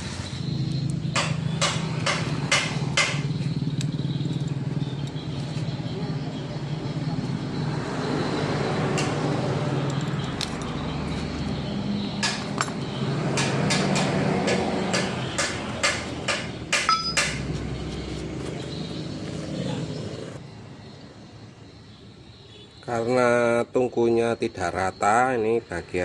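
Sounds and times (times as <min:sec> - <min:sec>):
metallic clinks of steel tools: 0:16.8 - 0:17.5.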